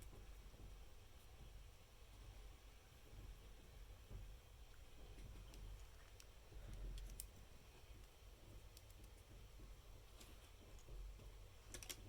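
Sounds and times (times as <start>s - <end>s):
plastic pieces clicking together: 11.7s - 12.0s.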